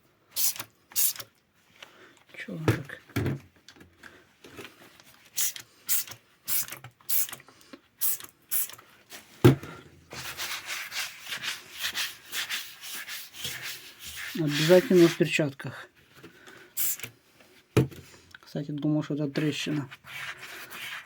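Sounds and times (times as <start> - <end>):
hand rubbing on glass: 12.6 - 15.4.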